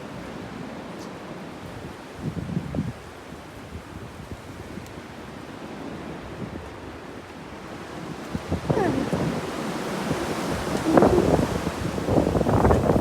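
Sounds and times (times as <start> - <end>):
wind buffeting microphone: 8.0 - 13.0.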